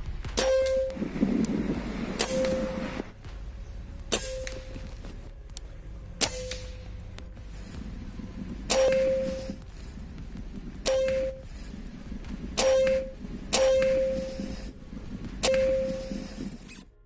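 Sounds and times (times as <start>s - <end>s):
air rifle shots: 0.3s - 3.1s, 4.1s - 4.9s, 6.2s - 7.0s, 8.6s - 9.9s, 10.7s - 11.7s, 12.4s - 14.7s, 15.3s - 16.4s.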